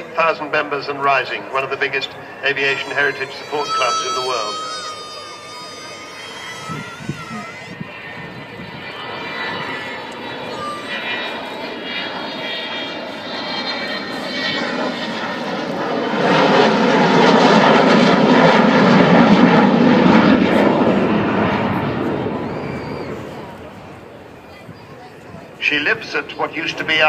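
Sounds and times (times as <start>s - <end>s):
jet bomber flying past: 0.0s - 27.0s.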